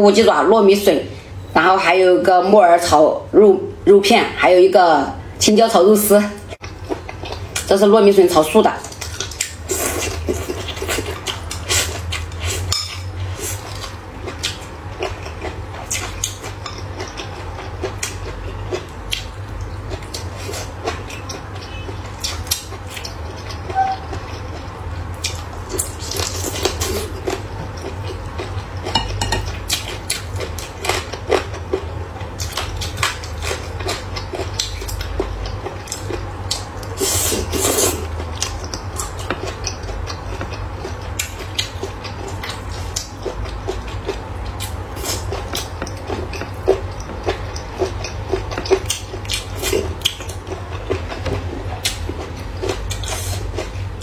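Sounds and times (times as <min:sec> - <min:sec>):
steady low hum: 0:00.0 - 0:54.0
chewing: 0:08.8 - 0:54.0
chopsticks clicking on bowls: 0:28.8 - 0:29.8.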